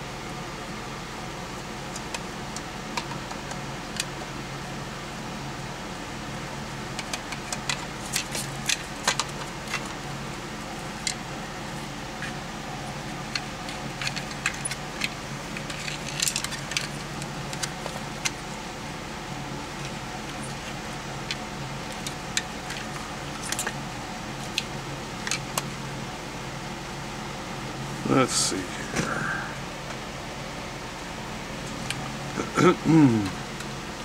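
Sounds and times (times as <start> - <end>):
steady low hum: 0.0 - 34.0
metal tools clicking and clinking: 14.0 - 18.4.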